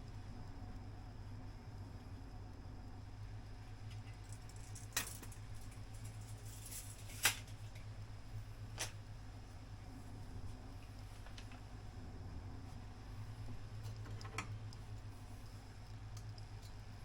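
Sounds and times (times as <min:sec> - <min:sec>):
wood fire crackling: 0:00.0 - 0:17.0
steady low rumble: 0:07.6 - 0:17.0.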